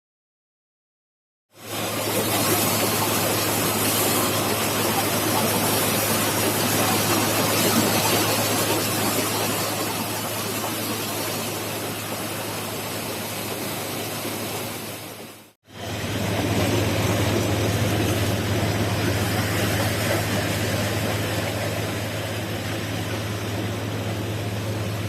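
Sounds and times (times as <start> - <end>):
threshing machine running: 15.7 - 25.0.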